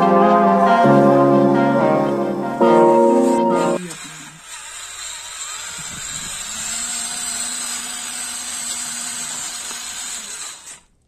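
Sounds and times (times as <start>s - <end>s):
small electric motor whirring: 3.8s - 11.0s.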